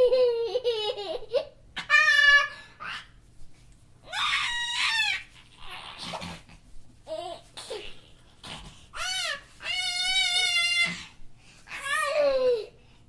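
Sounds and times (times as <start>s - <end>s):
child laughing and squealing: 0.0s - 3.1s, 4.1s - 6.2s, 9.0s - 12.7s.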